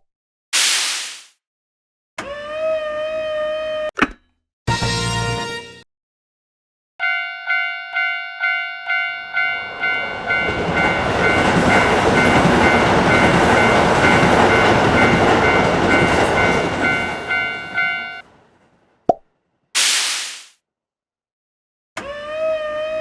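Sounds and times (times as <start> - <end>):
sharp click: 0.6 - 1.3, 19.8 - 20.5
level-crossing warning bell: 7.0 - 18.3
train rumbling and clattering: 9.6 - 18.9.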